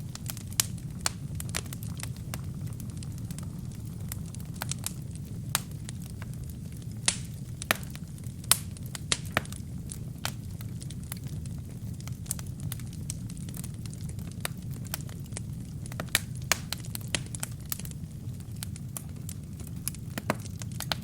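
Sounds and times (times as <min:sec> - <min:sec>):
crackles and pops of fire: 0:00.0 - 0:21.0
fire burning in fireplace: 0:00.0 - 0:21.0.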